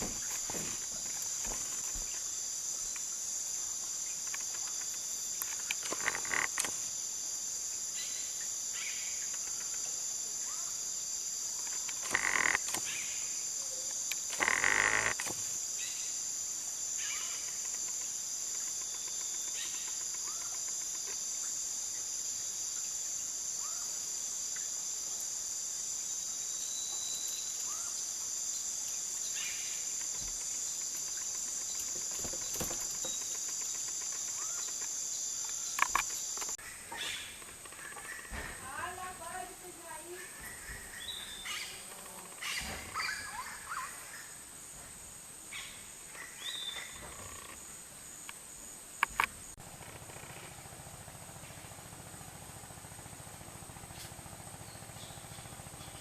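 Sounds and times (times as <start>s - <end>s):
high-pitched insect drone: 0.0s - 36.6s.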